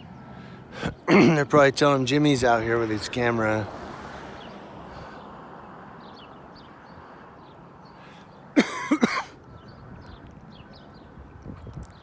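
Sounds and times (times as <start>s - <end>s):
outdoor background hiss: 0.0s - 9.5s
person coughing: 0.8s - 1.5s, 8.6s - 9.4s.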